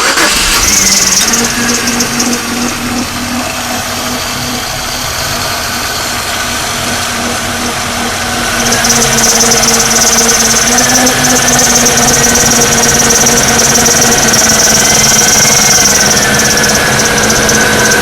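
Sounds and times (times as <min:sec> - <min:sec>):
car engine humming: 0:00.0 - 0:18.0
high-pitched rushing noise: 0:00.0 - 0:18.0.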